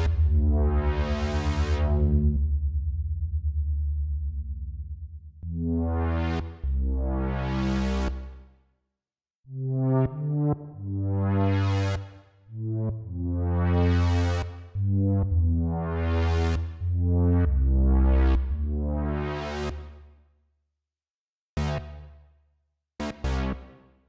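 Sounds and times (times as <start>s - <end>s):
synthesizer bass notes: 0.0s - 8.3s, 12.6s - 20.0s.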